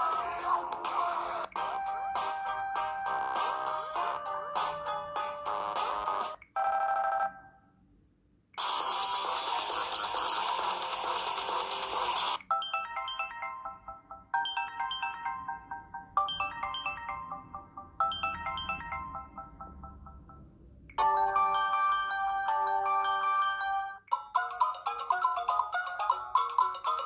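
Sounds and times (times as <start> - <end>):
phone ringtones: 1.6 - 7.6, 12.4 - 24.2.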